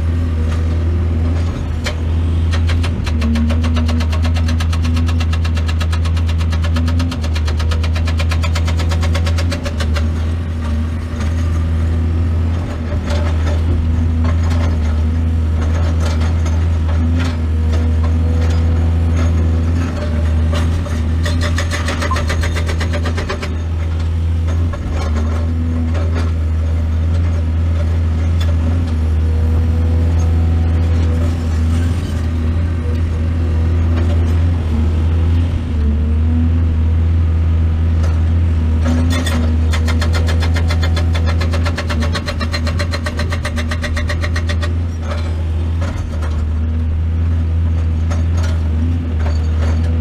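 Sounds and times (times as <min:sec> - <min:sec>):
diesel excavator engine running: 0:00.0 - 0:50.0
metal clanks and rattles: 0:00.5 - 0:11.7, 0:12.5 - 0:29.0, 0:38.0 - 0:46.8, 0:47.7 - 0:50.0.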